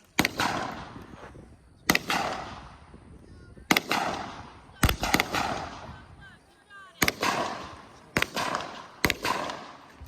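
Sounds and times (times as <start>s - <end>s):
gunshots with echo: 1.9s - 2.6s, 7.0s - 9.8s.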